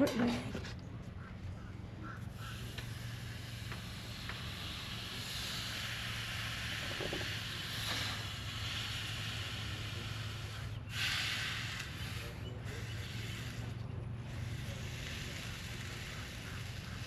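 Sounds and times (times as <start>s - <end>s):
brazing torch flame hissing: 2.3s - 17.0s.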